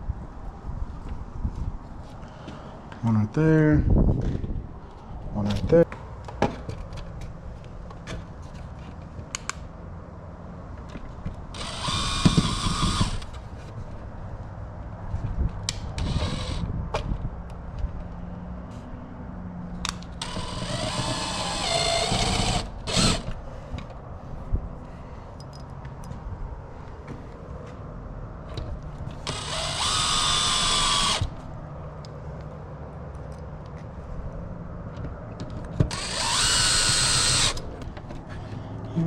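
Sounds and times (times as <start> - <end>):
power drill motor whine: 11.5 - 13.3, 16.0 - 16.7, 20.2 - 23.4, 29.2 - 31.4, 35.9 - 37.7.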